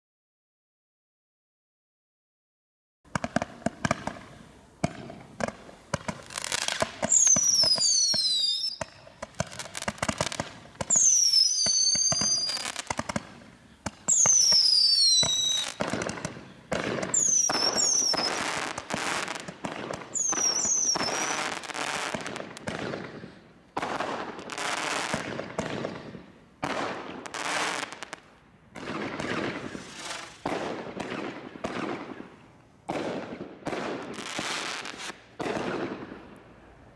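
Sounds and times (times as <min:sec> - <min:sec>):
firework launches and crackling bursts: 0:03.1 - 0:36.8
firework whistles falling in pitch: 0:06.4 - 0:09.0, 0:10.0 - 0:12.9, 0:13.8 - 0:19.4, 0:20.1 - 0:22.4.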